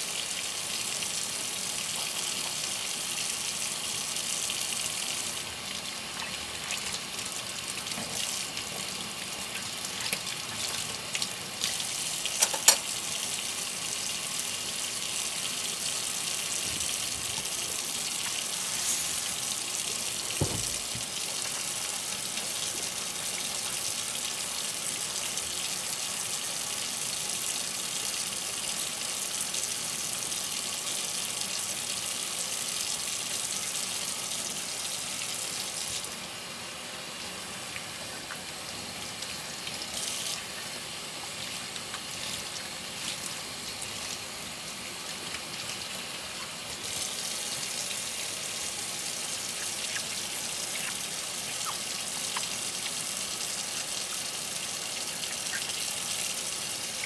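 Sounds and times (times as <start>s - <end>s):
dishes washed by hand: 5.5s - 13.1s, 16.2s - 23.1s
tap running into sink: 12.4s - 12.9s, 16.6s - 21.7s.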